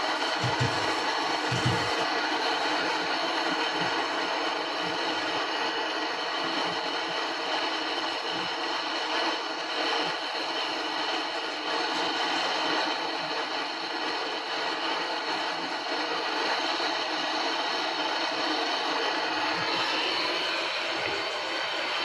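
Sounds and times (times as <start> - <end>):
torch flame hissing: 0.0 - 8.2.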